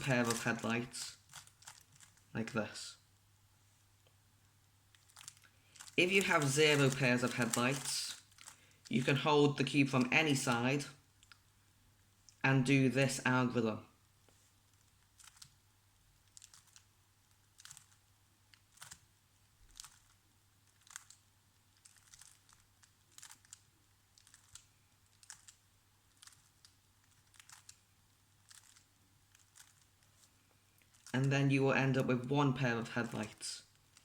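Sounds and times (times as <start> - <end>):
puzzle cube plastic clicks: 5.0 - 9.0, 16.2 - 19.1, 19.7 - 30.1.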